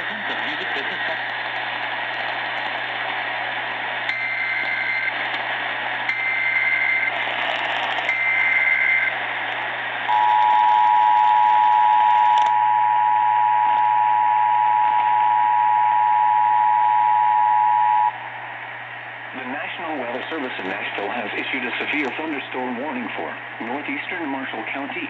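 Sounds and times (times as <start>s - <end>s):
radio static hiss: 0.0s - 12.5s, 18.0s - 25.0s.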